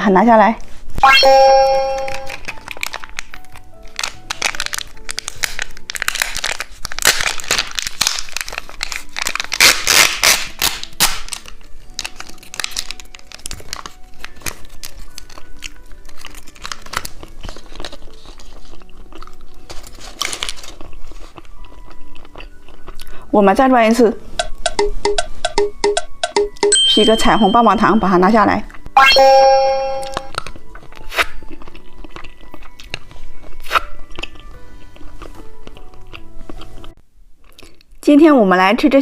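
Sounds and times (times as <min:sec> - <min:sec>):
background music: 0:00.0 - 0:39.0
plastic wrapper crinkling: 0:01.9 - 0:23.0, 0:30.2 - 0:38.0.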